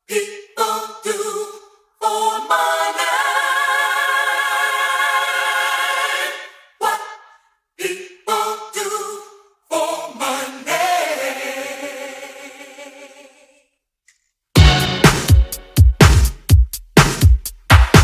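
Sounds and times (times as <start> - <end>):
voices singing in harmony: 0.0 - 13.8.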